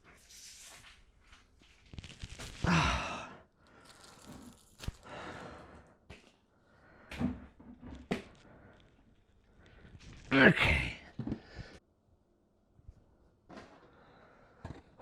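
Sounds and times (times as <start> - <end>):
man sighing and breathing heavily: 2.6 - 5.9.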